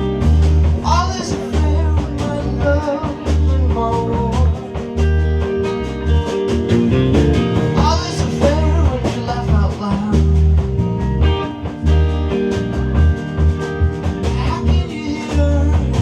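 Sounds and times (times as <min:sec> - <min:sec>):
live rock band playing: 0:00.0 - 0:16.0
person singing: 0:00.8 - 0:05.1, 0:07.8 - 0:10.6, 0:14.3 - 0:16.0.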